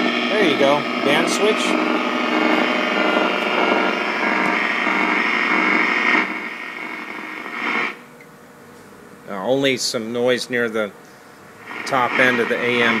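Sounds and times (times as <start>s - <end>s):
radio static hiss: 0.0s - 8.2s, 11.5s - 13.0s
steady hum: 0.0s - 13.0s.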